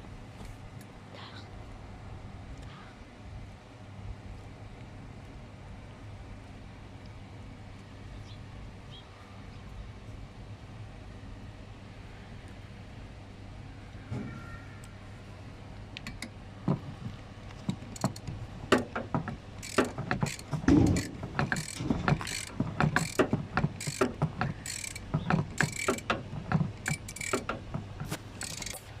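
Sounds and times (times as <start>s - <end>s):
hand tools clicking and clunking: 16.0s - 29.0s.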